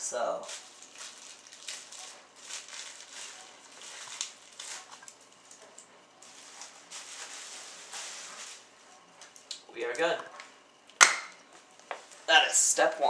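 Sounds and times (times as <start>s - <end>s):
plastic bag crinkling: 0.4s - 8.7s.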